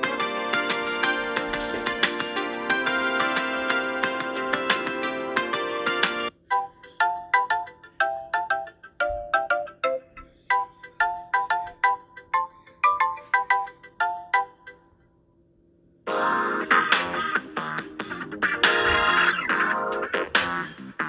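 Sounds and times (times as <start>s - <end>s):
plucked ringtone melody: 0.0s - 14.9s
dense ringtone tune: 16.1s - 20.3s.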